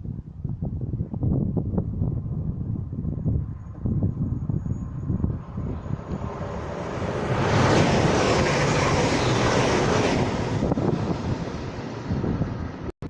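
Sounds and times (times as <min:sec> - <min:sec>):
wind buffeting microphone: 0:00.0 - 0:12.9
train passing at speed: 0:04.3 - 0:12.9.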